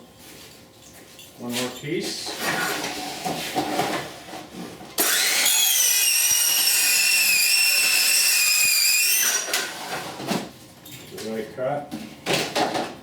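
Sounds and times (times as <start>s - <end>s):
circular saw cutting vinyl: 5.0s - 9.6s.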